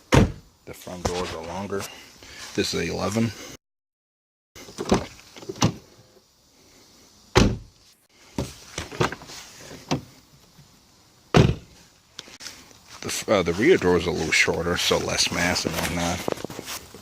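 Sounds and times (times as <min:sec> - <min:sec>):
car door slamming shut: 0:00.1 - 0:00.5, 0:07.3 - 0:07.7, 0:11.3 - 0:11.7.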